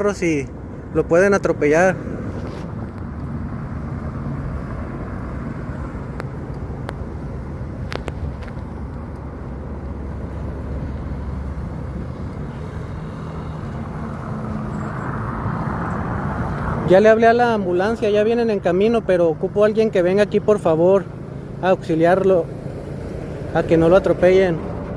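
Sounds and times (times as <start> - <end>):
road traffic rumble: 0.0 - 24.9.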